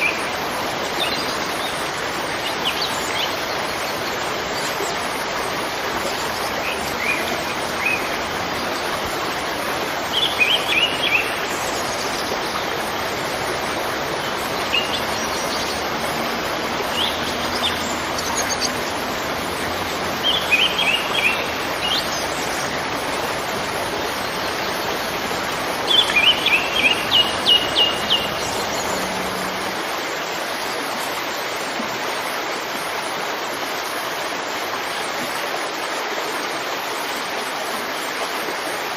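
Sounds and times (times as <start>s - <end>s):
waterfall rushing: 0.0s - 38.9s
bird chirping: 14.2s - 19.4s, 20.0s - 29.8s.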